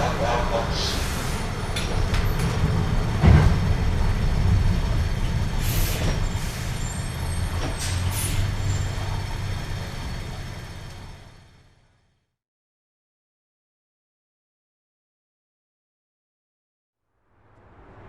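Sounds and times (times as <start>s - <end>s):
heavy vehicle engine rumbling: 0.0s - 12.2s.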